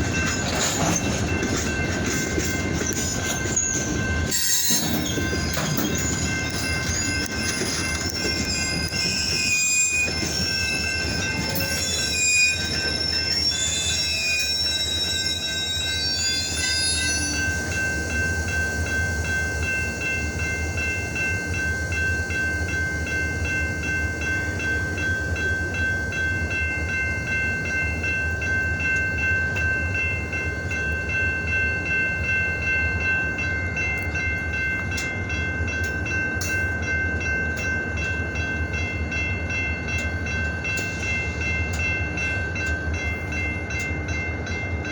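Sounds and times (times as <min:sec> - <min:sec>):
train low rumble: 0:00.0 - 0:44.9
train wheels squealing on rails: 0:00.0 - 0:44.9.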